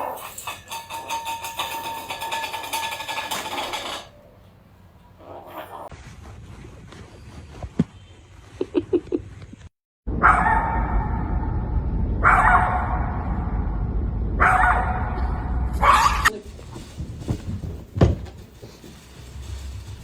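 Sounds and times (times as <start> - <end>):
low rumble: 10.1 - 17.2
dog barking: 10.2 - 10.9, 12.2 - 13.1, 14.4 - 15.2, 15.8 - 16.3.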